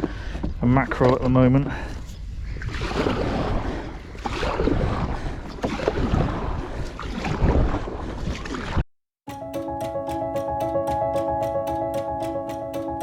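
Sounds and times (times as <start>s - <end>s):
water splashing against kayak: 2.4s - 8.8s.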